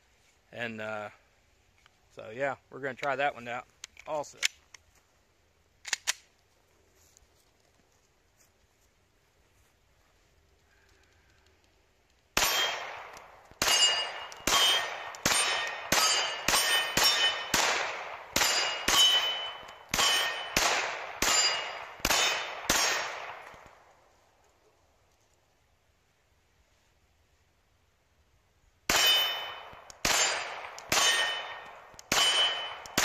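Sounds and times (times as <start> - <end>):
steel target ringing: 12.4 - 13.0, 13.6 - 17.7, 18.4 - 23.1, 28.9 - 33.0
pistol shots: 12.4 - 23.7, 28.9 - 33.0.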